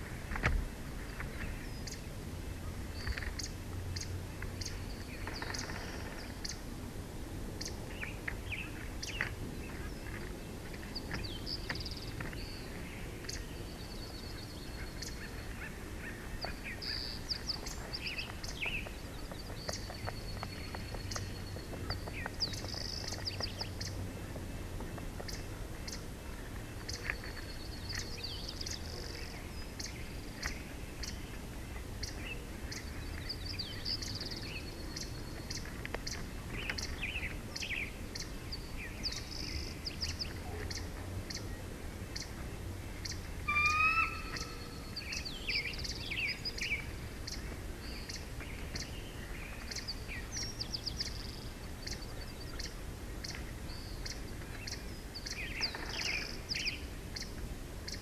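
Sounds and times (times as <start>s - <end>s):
steady outdoor background: 0.0s - 58.0s
songbird singing with trills: 1.1s - 2.2s, 2.9s - 6.6s, 7.6s - 24.0s, 26.8s - 58.0s.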